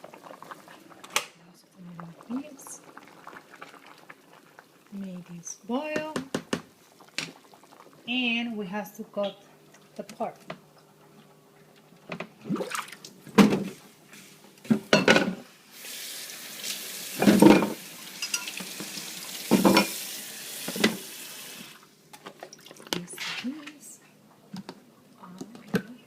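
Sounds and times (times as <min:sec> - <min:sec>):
kitchen items clattering: 0:14.7 - 0:15.4, 0:17.2 - 0:18.7, 0:19.5 - 0:20.0, 0:22.2 - 0:23.9
kitchen tap running: 0:15.8 - 0:21.8.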